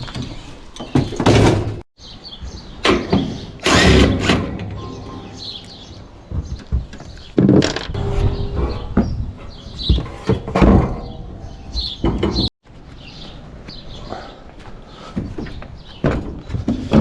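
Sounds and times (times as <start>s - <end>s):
birds chirping faintly: 4.8s - 7.6s.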